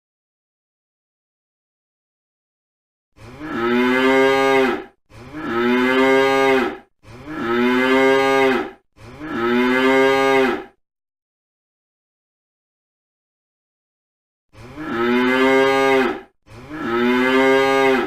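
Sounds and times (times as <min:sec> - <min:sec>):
cow mooing: 0:03.2 - 0:10.8, 0:14.6 - 0:18.0.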